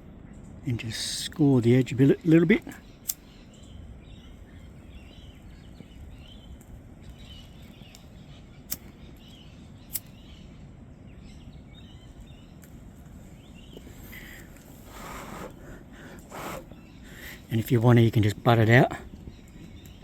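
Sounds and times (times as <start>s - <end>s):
wind rumble on microphone: 0.0s - 20.0s
sharp clicks: 2.6s - 3.3s, 9.9s - 10.2s
faint bird chirps: 2.6s - 20.0s.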